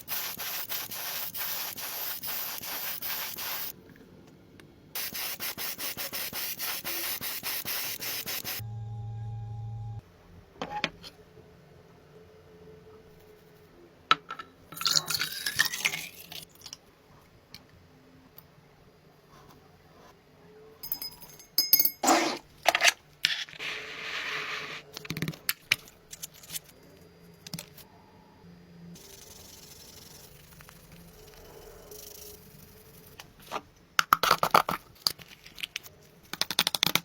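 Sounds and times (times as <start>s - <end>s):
clinks and knocks: 20.8s - 22.1s.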